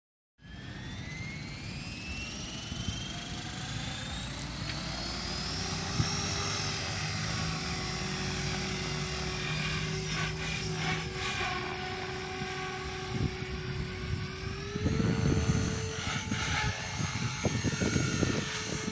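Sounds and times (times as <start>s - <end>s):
small aircraft motor whining: 0.4s - 18.9s
wind rumbling on microphone: 5.0s - 18.9s.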